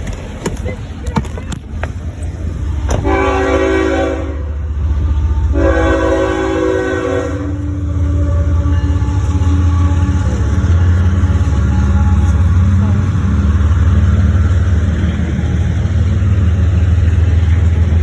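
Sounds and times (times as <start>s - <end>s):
deep rumble of train: 0.0s - 18.0s
locomotive horn blasts: 2.9s - 4.7s, 5.4s - 12.8s.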